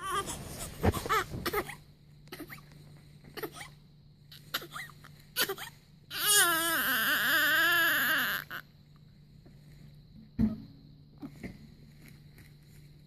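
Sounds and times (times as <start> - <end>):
newborn baby crying: 0.0 - 2.7, 3.3 - 8.7.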